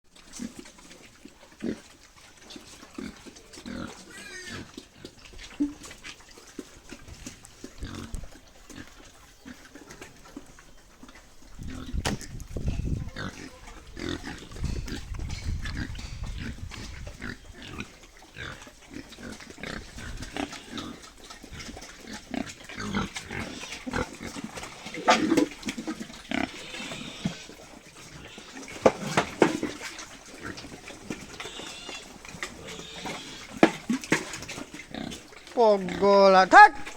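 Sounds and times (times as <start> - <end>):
pigs grunting: 0.2 - 36.9
pig squeals: 3.6 - 4.8, 24.8 - 25.5, 26.2 - 29.3, 31.1 - 33.8.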